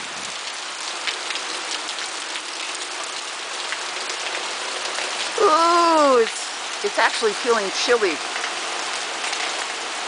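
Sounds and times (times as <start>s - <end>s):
heavy rain falling: 0.0s - 10.0s
raindrops tapping surfaces: 0.0s - 10.0s
woman speaking: 5.4s - 8.2s.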